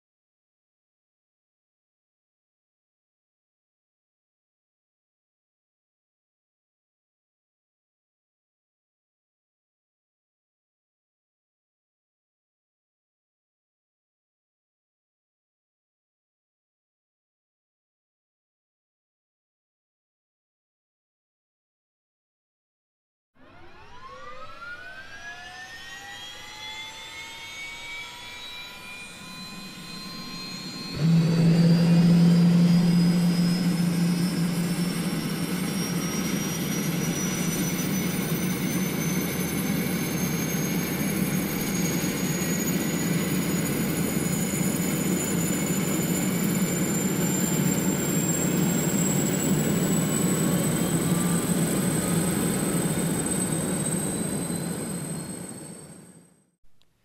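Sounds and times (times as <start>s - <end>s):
drone propellers whining: 23.4s - 56.2s.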